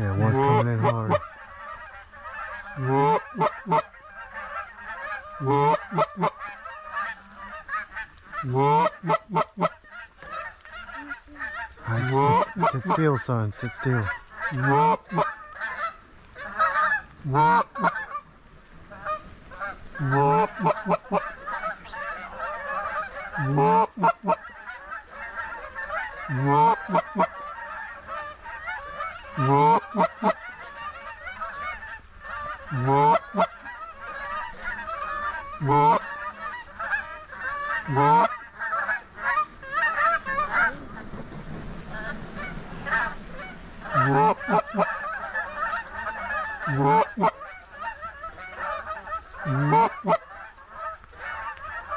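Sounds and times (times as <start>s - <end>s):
flock of geese yelping: 0.0s - 51.9s
geese honking: 0.0s - 51.9s.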